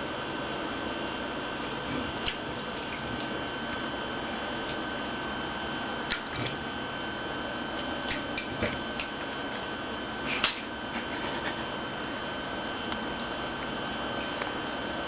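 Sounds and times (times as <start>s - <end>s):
kitten splashing water in bowl: 2.1s - 3.4s.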